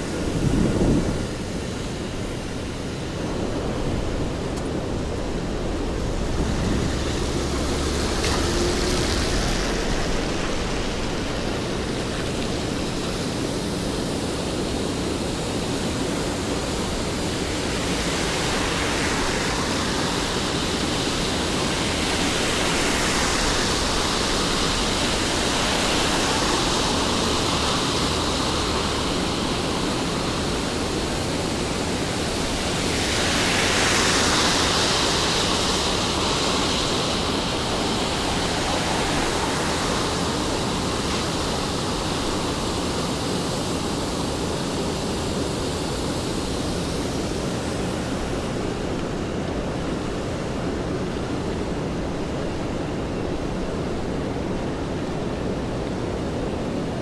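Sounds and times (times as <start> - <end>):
steady rainfall hiss: 0.0 - 57.0.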